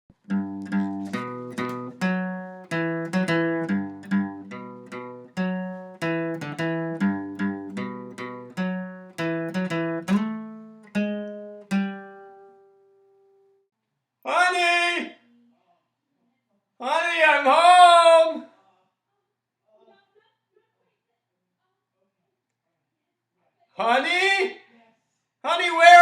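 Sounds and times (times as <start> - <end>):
acoustic guitar music: 0.1 - 13.5.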